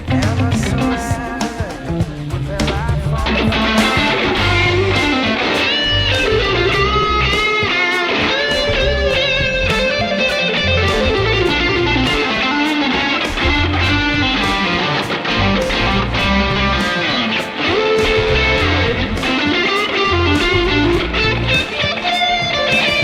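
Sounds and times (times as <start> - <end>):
low bass line: 0.0 - 7.5, 8.5 - 12.4, 13.3 - 17.0, 18.0 - 19.4, 20.1 - 21.7
overdriven electric guitar melody: 0.0 - 23.0
percussive hits: 0.1 - 23.0.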